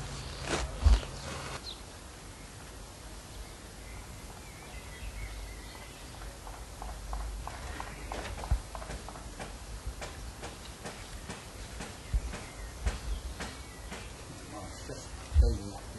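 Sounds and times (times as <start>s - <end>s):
outdoor background: 0.0s - 15.9s
spade chopping into soil: 0.4s - 1.6s.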